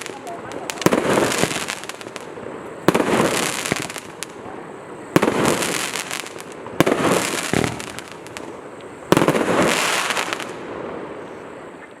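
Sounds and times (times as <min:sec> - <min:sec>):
firework crackling: 0:00.0 - 0:11.6
firework launch bangs: 0:05.1 - 0:08.4.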